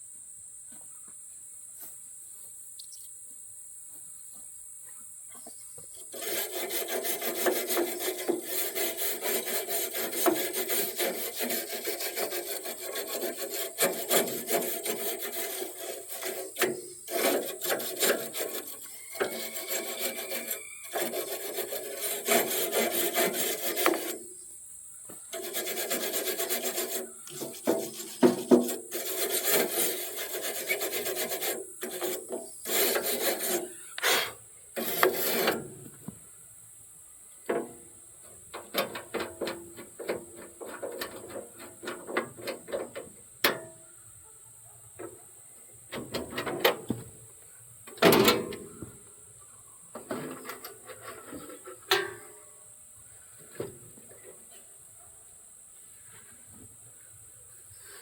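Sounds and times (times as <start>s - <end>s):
rapid rubbing strokes: 6.0s - 24.4s, 25.3s - 35.7s.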